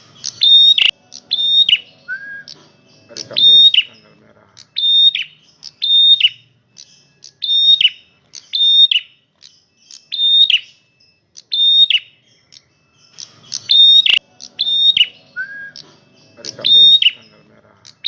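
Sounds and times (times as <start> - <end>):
songbird singing: 0.0 - 18.0.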